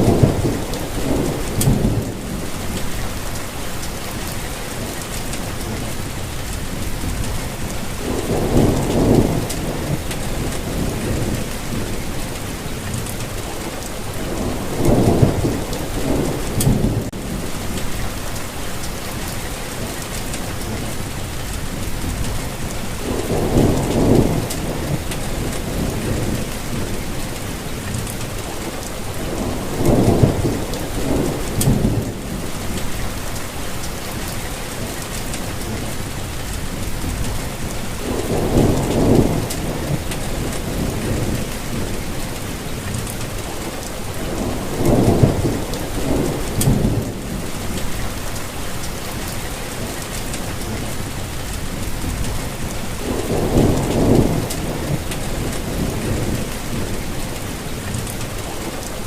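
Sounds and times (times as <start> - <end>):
steady rain hissing: 0.0 - 59.0.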